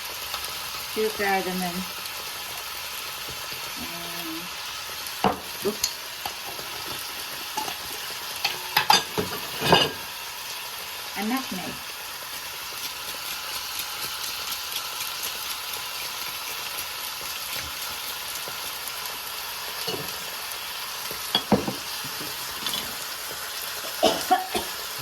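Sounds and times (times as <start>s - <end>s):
spices sizzling in hot oil: 0.0s - 25.0s
utensil knocking against pan: 21.4s - 22.3s.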